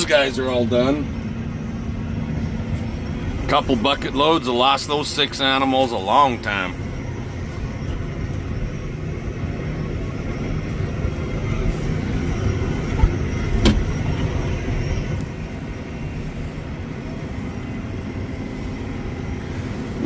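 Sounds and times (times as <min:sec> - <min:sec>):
tractor engine running: 0:00.0 - 0:20.0.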